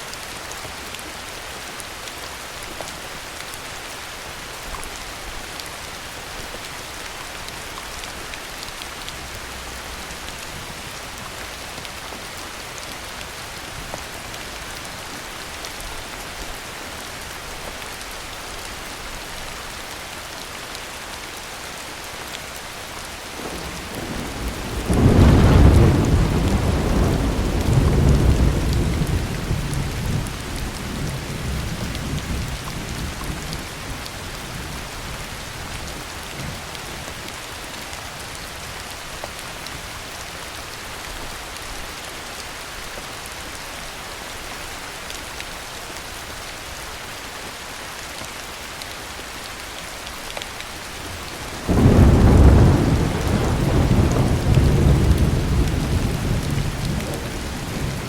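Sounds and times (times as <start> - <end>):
heavy rain falling: 0.0 - 58.0
thunder rumbling: 23.4 - 33.7, 51.3 - 58.0.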